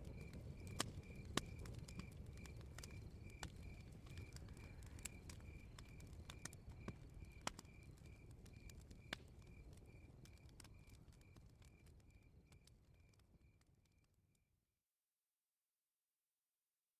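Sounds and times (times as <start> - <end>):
cricket chirping: 0.0 - 13.6
campfire crackles: 0.0 - 14.2.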